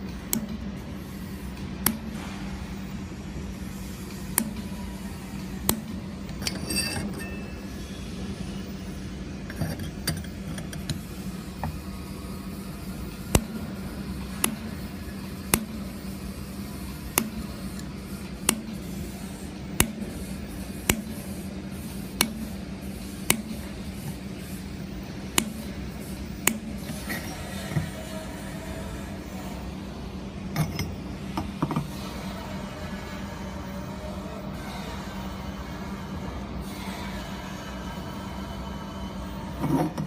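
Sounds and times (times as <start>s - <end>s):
laser welder humming: 0.0s - 35.7s
sharp snap on steel: 0.3s - 0.6s, 1.8s - 2.2s, 4.3s - 4.7s, 5.6s - 6.0s, 13.3s - 13.6s, 14.3s - 14.7s, 15.5s - 15.8s, 17.1s - 18.8s, 19.7s - 20.2s, 20.8s - 21.2s, 22.2s - 22.5s, 23.2s - 23.6s, 25.3s - 25.7s, 26.4s - 27.0s.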